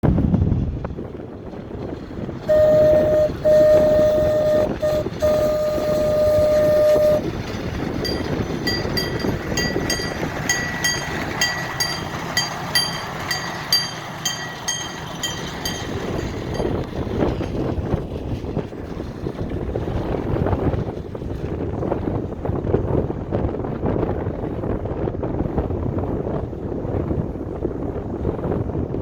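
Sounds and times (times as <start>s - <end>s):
wind rumbling on microphone: 0.0s - 29.0s
locomotive horn: 2.4s - 16.7s
locomotive bell ringing: 2.5s - 17.6s.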